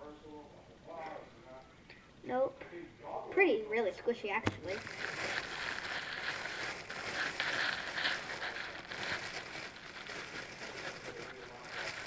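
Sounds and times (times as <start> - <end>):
plastic packaging crinkling: 4.4 - 12.0.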